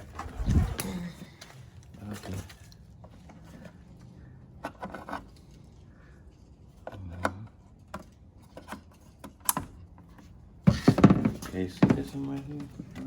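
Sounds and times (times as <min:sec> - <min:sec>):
plastic parts clicking and knocking: 0:06.8 - 0:13.0.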